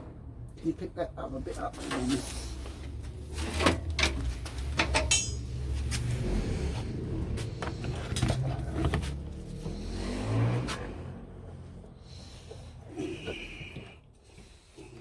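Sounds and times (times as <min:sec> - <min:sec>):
metal tools clattering: 0:03.4 - 0:05.8.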